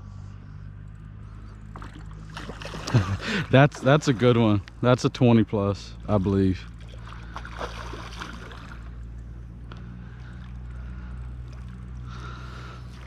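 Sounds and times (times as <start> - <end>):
low motor hum: 0.0 - 13.0
water splashes: 1.6 - 9.2.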